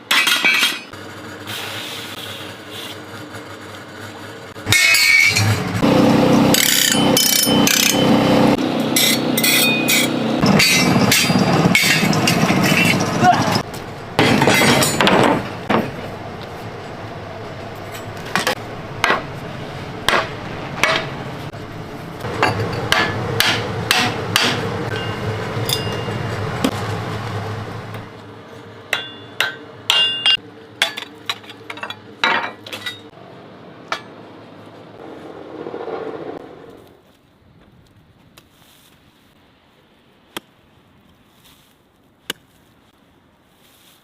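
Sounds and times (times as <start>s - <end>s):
hammer striking steel: 4.6s - 5.6s, 6.5s - 8.2s, 8.9s - 13.0s, 20.0s - 21.2s, 22.3s - 26.8s, 28.9s - 31.1s
steady background rumble: 8.4s - 37.0s.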